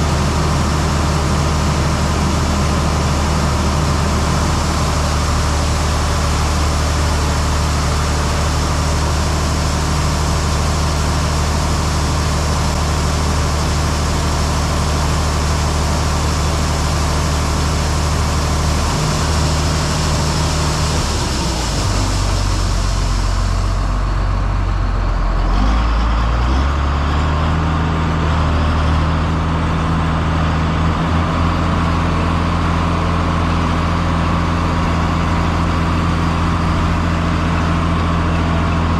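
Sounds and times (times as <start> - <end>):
engine hiss: 0.0 - 24.8
heavy vehicle engine running: 0.0 - 38.9.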